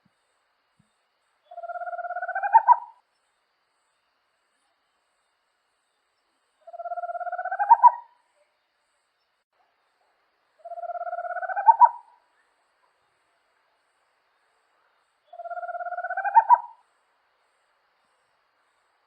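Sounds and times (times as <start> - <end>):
small owl purring trill: 1.4 - 3.0, 6.6 - 8.2, 10.6 - 12.2, 15.3 - 16.9.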